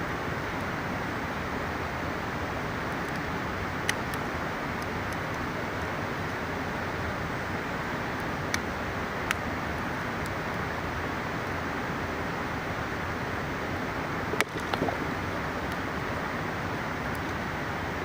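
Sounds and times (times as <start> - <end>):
campfire pops and crackles: 14.3 - 15.9.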